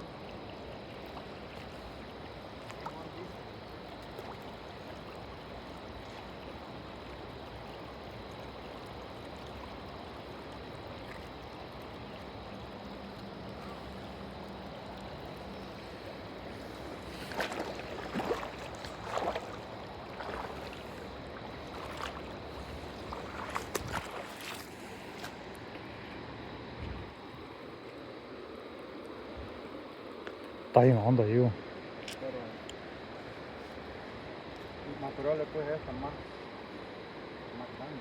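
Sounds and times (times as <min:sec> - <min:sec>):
flowing river water: 0:00.0 - 0:38.0
sharp water splashes: 0:10.2 - 0:25.5.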